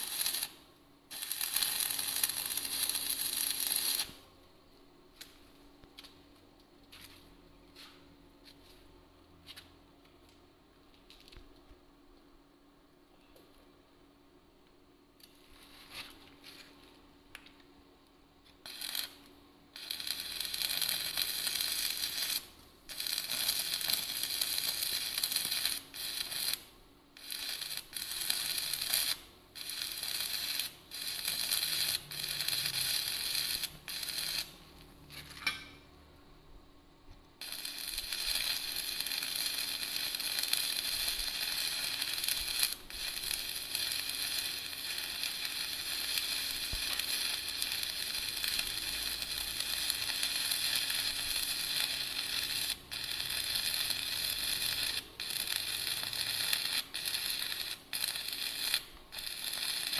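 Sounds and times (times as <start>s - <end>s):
arc welding crackling hiss: 0.0s - 4.2s, 18.5s - 34.9s, 37.4s - 59.9s.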